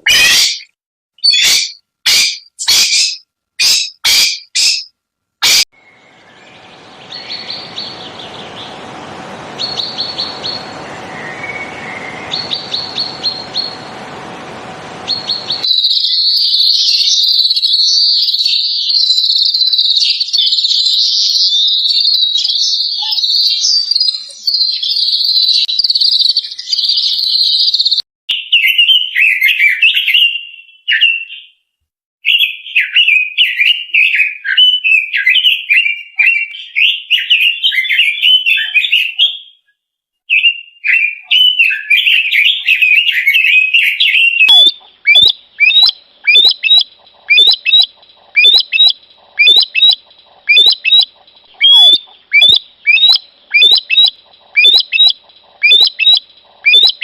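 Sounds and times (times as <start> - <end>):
short sharp bird calls: 0.0 - 6.0, 42.8 - 57.0
songbirds warbling: 5.5 - 28.0, 40.3 - 57.0.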